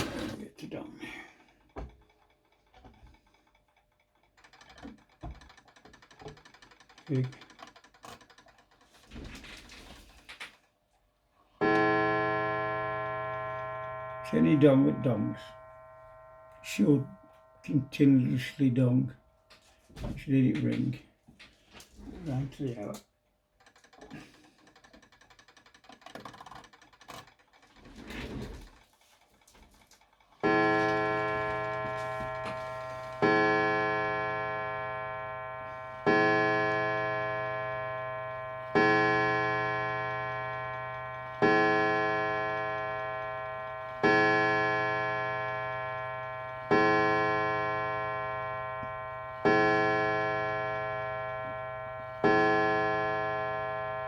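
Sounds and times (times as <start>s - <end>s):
clock striking on coil gong: 11.6s - 18.4s, 30.4s - 54.0s.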